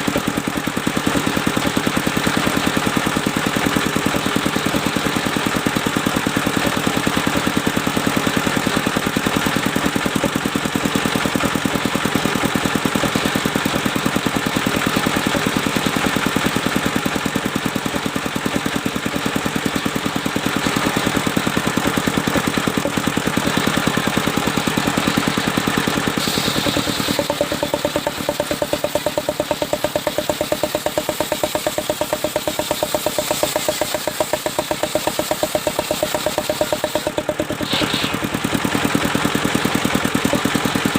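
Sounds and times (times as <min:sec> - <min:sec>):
sawmill engine running: 0:00.0 - 0:40.9.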